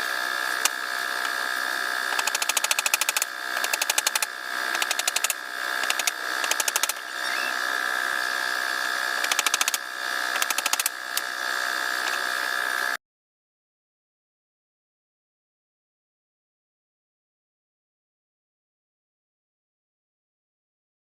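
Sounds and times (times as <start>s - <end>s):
steady high hum: 0.0s - 13.0s
rapid mechanical clicking: 0.5s - 1.4s, 2.0s - 7.3s, 9.1s - 11.4s.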